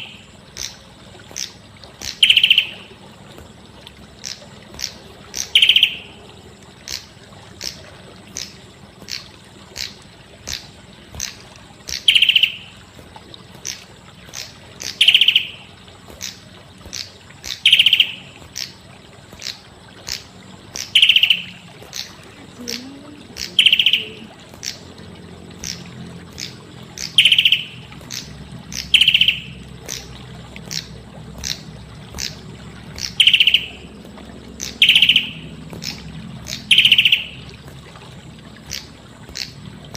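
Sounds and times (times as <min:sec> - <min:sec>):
sharp ticks: 0:00.0 - 0:37.9, 0:38.6 - 0:39.9
songbird calling high note: 0:01.4 - 0:03.0, 0:04.2 - 0:06.2, 0:11.2 - 0:12.8, 0:14.3 - 0:18.7, 0:20.8 - 0:24.8, 0:26.4 - 0:30.1, 0:33.0 - 0:33.9, 0:34.6 - 0:37.5.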